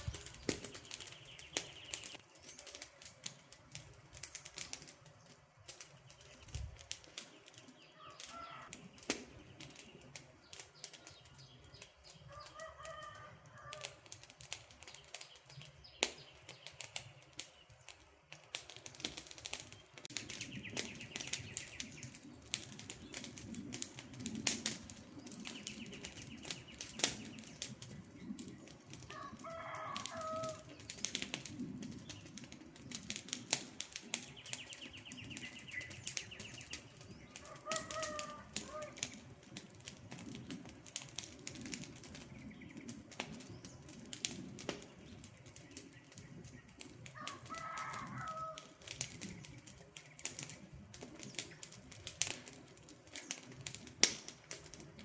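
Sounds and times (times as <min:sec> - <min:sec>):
birds calling: 0:00.0 - 0:03.5, 0:05.2 - 0:13.8, 0:19.7 - 0:24.1, 0:25.1 - 0:39.3
campfire crackling and popping: 0:00.0 - 0:55.0.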